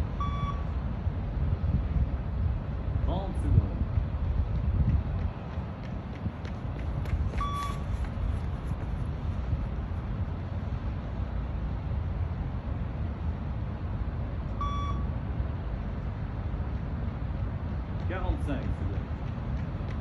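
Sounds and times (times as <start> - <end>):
steady low rumble: 0.0 - 20.0
short electronic beeps: 0.2 - 0.7, 7.4 - 7.8, 14.6 - 15.1.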